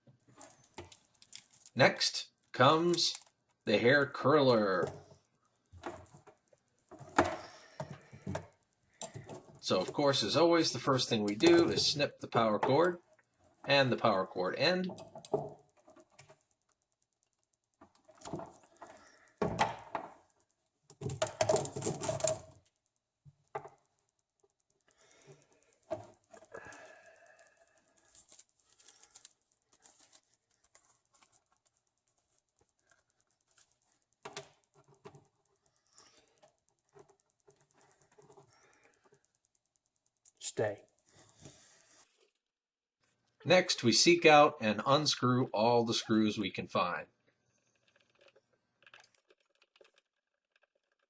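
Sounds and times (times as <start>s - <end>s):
rustling: 14.9s - 42.4s.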